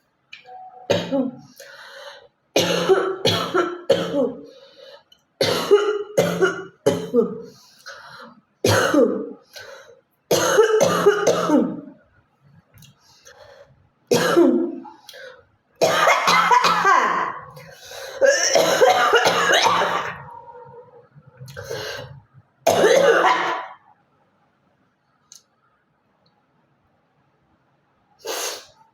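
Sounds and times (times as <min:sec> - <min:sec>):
woman coughing: 0:00.9 - 0:01.5, 0:02.6 - 0:04.4, 0:05.4 - 0:07.5, 0:08.7 - 0:09.4, 0:10.3 - 0:11.9, 0:14.1 - 0:14.8, 0:15.8 - 0:17.5, 0:18.2 - 0:20.4, 0:22.7 - 0:23.8
woman speaking: 0:00.9 - 0:01.5.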